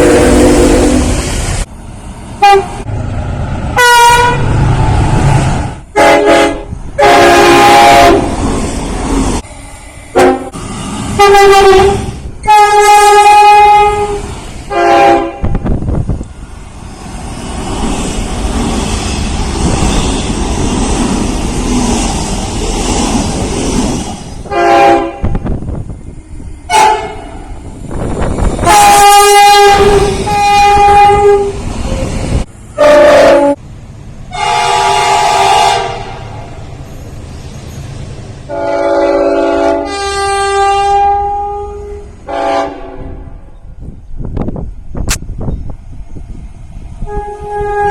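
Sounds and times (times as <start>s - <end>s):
locomotive air horn blasts: 0.0s - 1.2s, 2.4s - 2.9s, 3.8s - 4.5s, 5.9s - 8.3s, 10.1s - 10.6s, 11.2s - 15.7s, 24.5s - 25.4s, 26.7s - 27.3s, 28.6s - 31.6s, 32.8s - 33.6s, 34.3s - 36.2s, 38.5s - 43.4s, 47.0s - 47.9s
passing train rumble: 0.0s - 47.9s.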